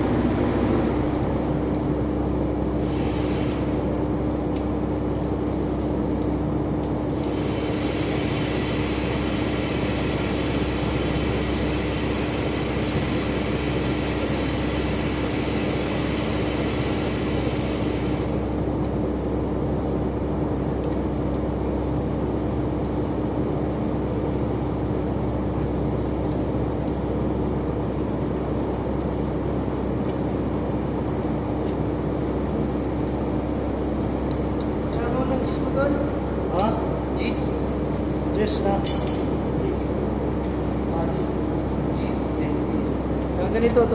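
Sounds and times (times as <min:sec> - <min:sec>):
machine humming: 0:00.0 - 0:43.9
hiss: 0:02.8 - 0:03.8.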